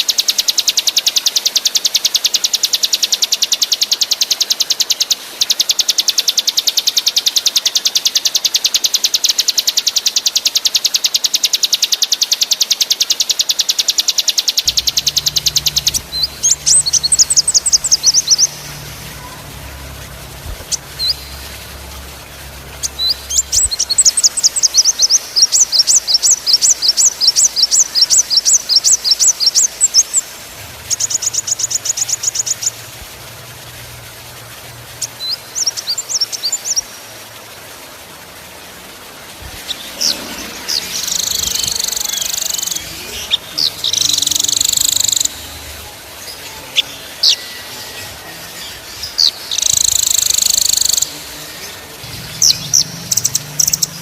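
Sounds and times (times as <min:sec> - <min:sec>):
songbird trilling: 0:00.0 - 0:30.3, 0:39.5 - 0:54.0
sharp downward-sweeping bird notes: 0:14.6 - 0:33.7.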